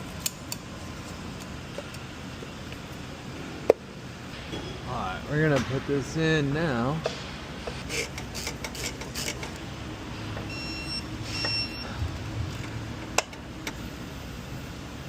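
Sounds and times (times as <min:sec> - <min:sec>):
workshop hum: 0:00.0 - 0:15.0
short high electronic beeps: 0:10.5 - 0:11.9.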